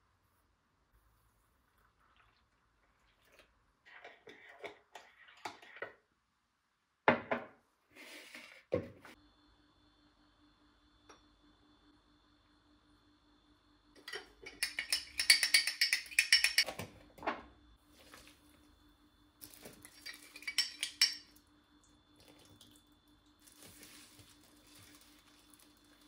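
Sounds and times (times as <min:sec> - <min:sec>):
kitchenware clinking and clattering: 0:14.0 - 0:17.4, 0:19.4 - 0:21.4.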